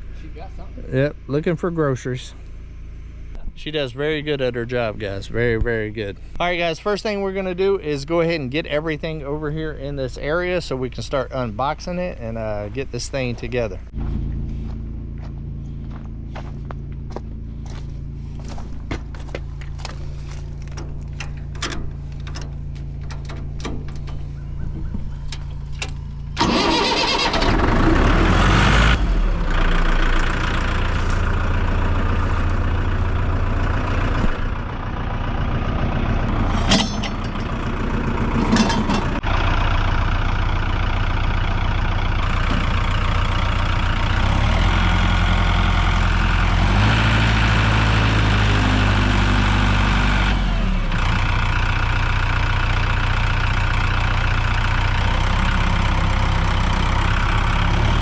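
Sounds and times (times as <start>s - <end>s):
vehicle engine revving: 24.2s - 39.8s, 42.2s - 51.6s, 54.9s - 58.0s.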